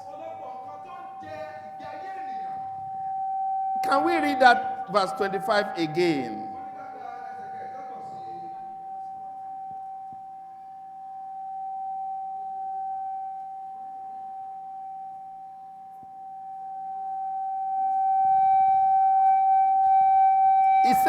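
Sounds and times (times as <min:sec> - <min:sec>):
high feedback tone: 0:03.2 - 0:06.8.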